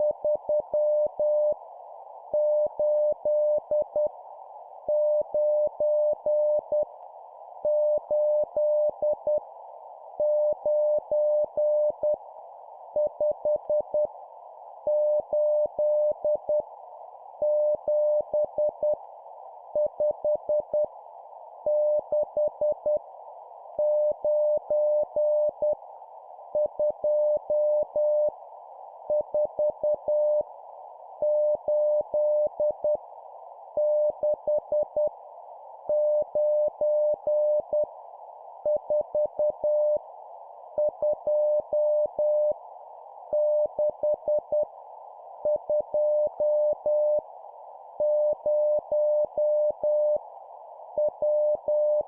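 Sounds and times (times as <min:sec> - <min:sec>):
morse code beep tone: 0:10.2 - 0:12.2, 0:31.2 - 0:33.0, 0:40.8 - 0:42.5, 0:45.5 - 0:47.2, 0:48.0 - 0:50.2, 0:51.0 - 0:52.0.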